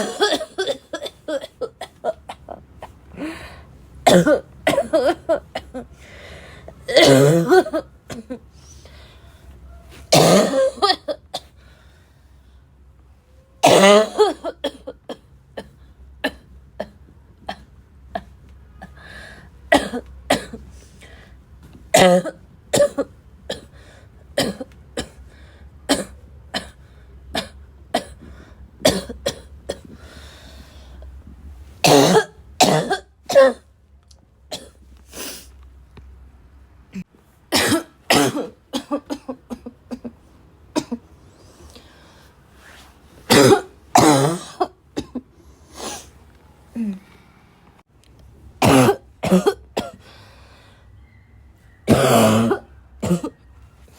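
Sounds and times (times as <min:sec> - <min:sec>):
person coughing harshly: 0:00.0 - 0:02.6, 0:04.0 - 0:05.9, 0:06.9 - 0:08.4, 0:10.1 - 0:11.5, 0:13.6 - 0:19.0, 0:19.7 - 0:20.6, 0:21.9 - 0:23.7, 0:24.4 - 0:25.2, 0:28.8 - 0:30.0, 0:31.8 - 0:33.6, 0:34.5 - 0:34.8, 0:37.0 - 0:40.1, 0:40.7 - 0:41.0, 0:43.3 - 0:46.1, 0:48.6 - 0:50.1, 0:51.9 - 0:53.4.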